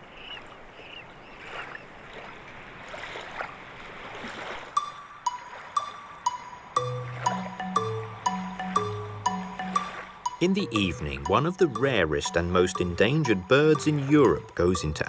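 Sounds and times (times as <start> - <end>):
soft watery background: 0.0 - 15.0
water rail squealing: 4.7 - 15.0
plucked-note music: 4.8 - 15.0.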